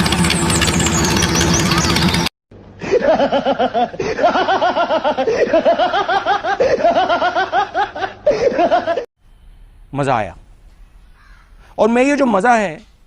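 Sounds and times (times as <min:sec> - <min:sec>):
loud engine-like noise: 0:00.0 - 0:02.3
rapid cartoonish laughter: 0:02.8 - 0:09.1.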